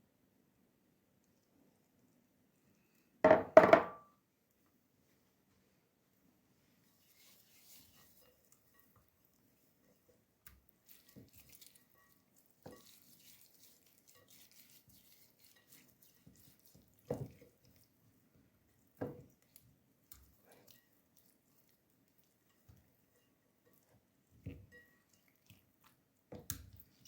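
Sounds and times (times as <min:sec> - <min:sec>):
soft knocks in kitchen: 0:03.2 - 0:04.0.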